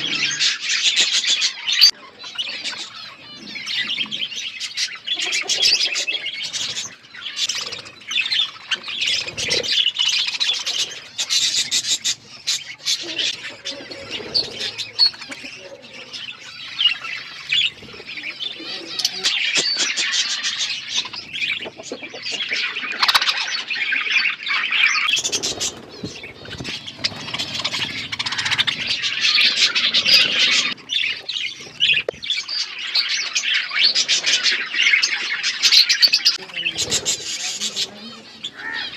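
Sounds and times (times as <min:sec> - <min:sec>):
budgerigars chattering: 0:00.0 - 0:38.9
wing flutters: 0:02.4 - 0:19.3, 0:25.1 - 0:32.5, 0:36.3 - 0:38.9.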